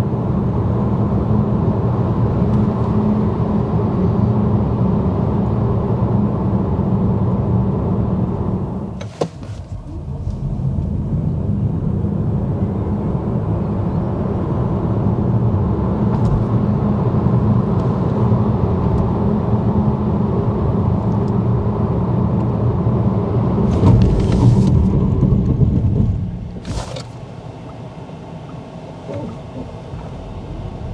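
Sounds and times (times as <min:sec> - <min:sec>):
tyre and road noise: 0:08.5 - 0:12.0, 0:23.6 - 0:27.6.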